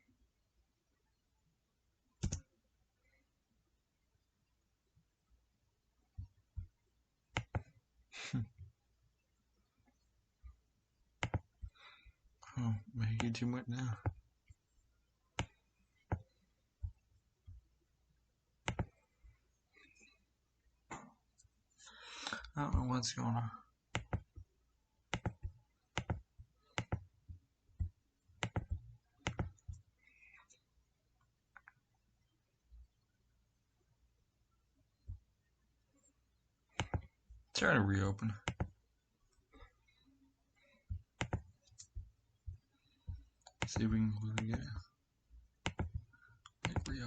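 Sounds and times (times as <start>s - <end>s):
mouse and keyboard clicks: 2.2s - 2.5s, 11.2s - 11.5s, 18.6s - 19.0s, 25.1s - 26.2s, 26.8s - 27.0s, 27.8s - 29.8s, 36.8s - 37.1s, 38.4s - 38.8s, 41.2s - 42.0s, 45.6s - 47.0s.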